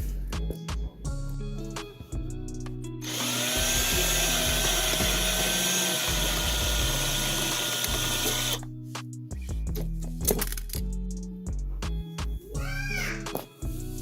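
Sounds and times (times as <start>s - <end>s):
power drill whining: 3.0s - 8.6s.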